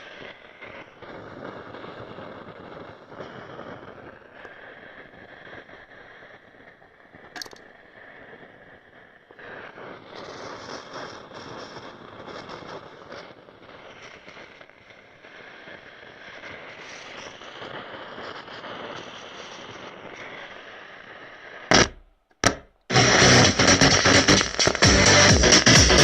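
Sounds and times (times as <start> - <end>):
loudspeaker crackling hiss: 0.0 - 7.1, 7.9 - 26.0
sharp click: 7.4 - 7.7.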